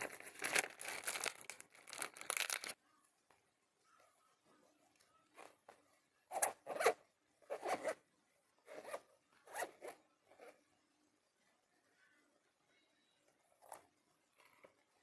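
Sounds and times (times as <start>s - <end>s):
zipper being pulled: 6.3s - 8.0s, 8.7s - 10.6s.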